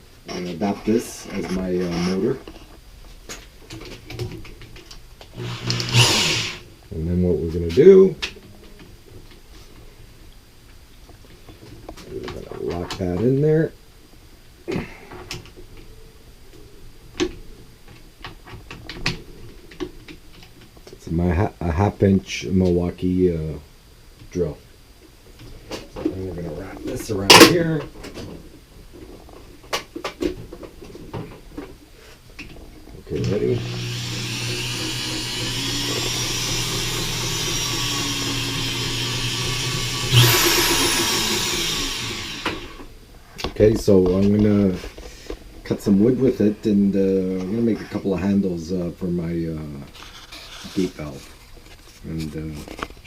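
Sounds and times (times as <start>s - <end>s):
electric drill running: 5.4s - 6.6s, 33.2s - 42.9s.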